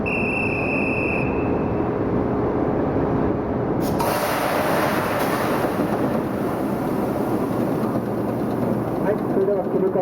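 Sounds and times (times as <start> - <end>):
hiss: 3.8 - 5.8.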